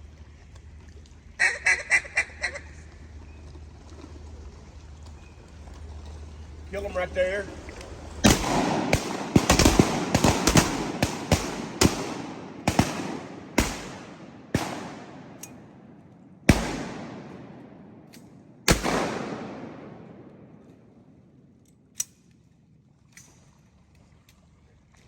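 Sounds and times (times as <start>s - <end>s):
shotgun blasts with echo: 8.2s - 21.1s.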